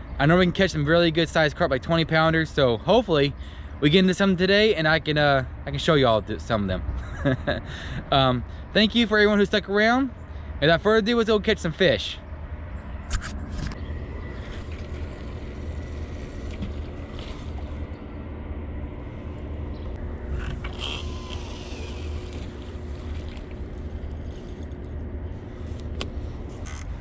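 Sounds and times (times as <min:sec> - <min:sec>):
faint steady hum: 0:10.1 - 0:27.0.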